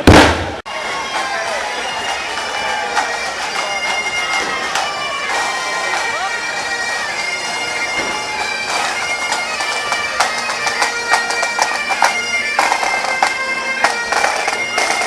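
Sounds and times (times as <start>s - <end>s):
firecracker bangs: 0.0s - 0.6s
bagpipes playing: 0.7s - 15.0s.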